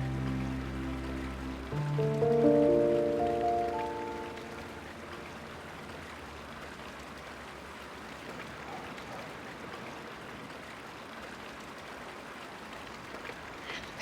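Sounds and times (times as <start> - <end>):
background hiss: 0.0 - 5.7.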